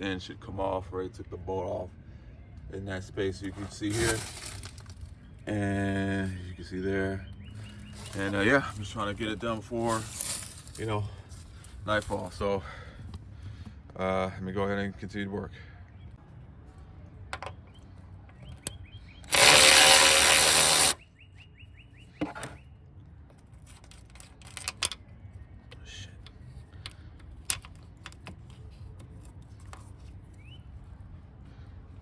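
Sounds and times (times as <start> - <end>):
power tool burst: 19.3 - 21.0.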